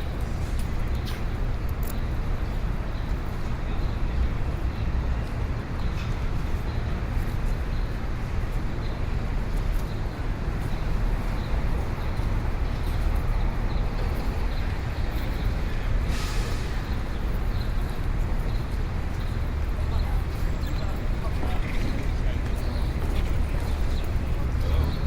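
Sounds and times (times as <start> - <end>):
heavy traffic rumble: 0.0 - 25.0
short hiss: 16.1 - 16.8.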